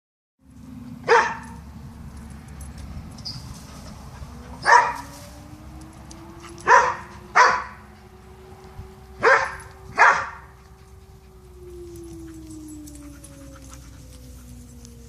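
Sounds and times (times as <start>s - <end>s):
dog barking: 1.1s - 1.6s, 4.6s - 5.0s, 6.6s - 7.8s, 9.2s - 10.5s.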